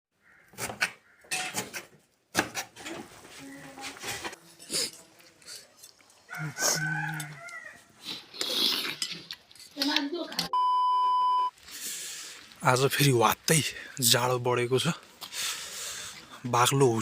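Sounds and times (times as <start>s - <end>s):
rooster crowing: 6.3s - 7.9s.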